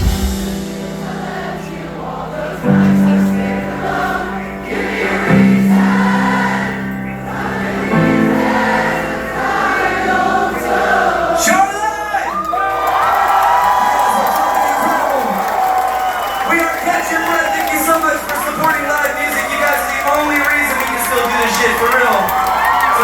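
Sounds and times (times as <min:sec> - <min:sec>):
rock band playing live: 0:00.0 - 0:01.2
crowd singing along: 0:00.0 - 0:12.2.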